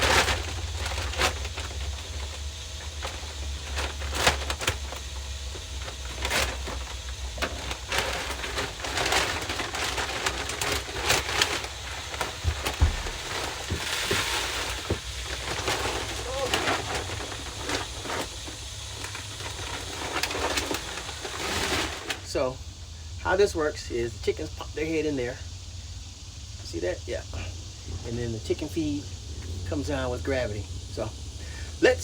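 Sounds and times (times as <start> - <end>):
grain pouring into plastic bucket: 0.0 - 22.5.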